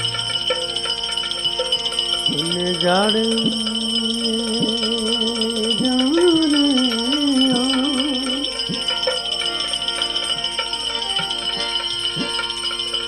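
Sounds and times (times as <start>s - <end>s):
jingling small cymbals: 0.0s - 13.0s
sustained accompaniment: 0.0s - 13.0s
man singing: 2.3s - 9.2s.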